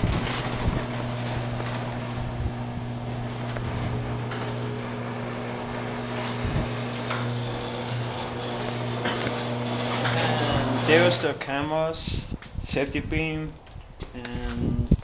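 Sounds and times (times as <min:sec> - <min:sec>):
garage door opener motor hum: 0:00.0 - 0:11.8.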